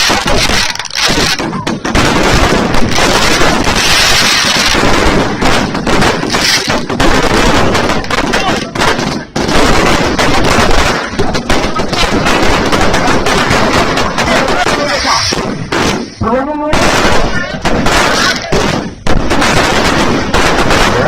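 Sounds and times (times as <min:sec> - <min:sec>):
fireworks and firecrackers banging: 0:00.0 - 0:21.0
crowd voices and shouts: 0:10.4 - 0:19.0.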